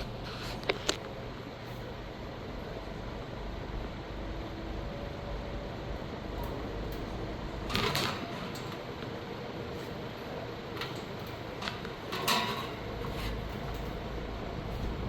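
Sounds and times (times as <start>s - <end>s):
electric fans whirring: 0.0s - 15.0s
handling knocks and rattles: 10.7s - 14.1s.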